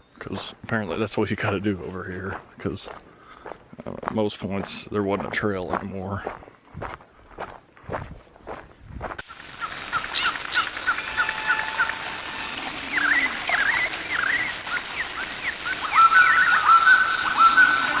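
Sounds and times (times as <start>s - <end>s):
birds chirping: 0.0s - 18.0s.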